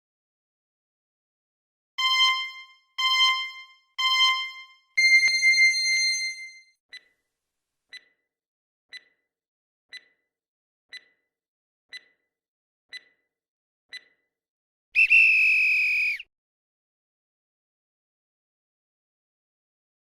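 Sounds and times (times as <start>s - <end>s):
clock ticking: 2.0s - 5.6s, 6.9s - 7.2s, 7.9s - 8.3s, 8.9s - 9.3s, 9.9s - 10.3s, 10.9s - 11.3s, 11.9s - 12.3s, 12.9s - 13.3s, 13.9s - 14.3s
high-pitched buzzer tone: 2.0s - 6.6s.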